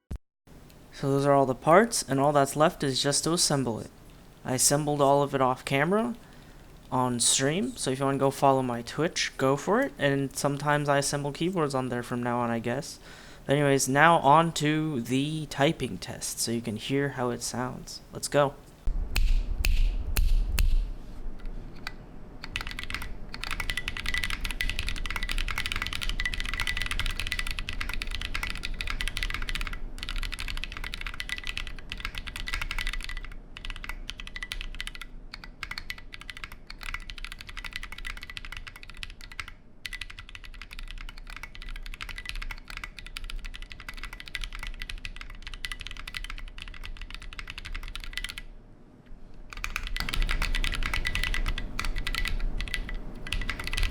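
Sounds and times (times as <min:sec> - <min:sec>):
typing on a mechanical keyboard: 0:21.7 - 0:48.5, 0:49.5 - 0:53.9.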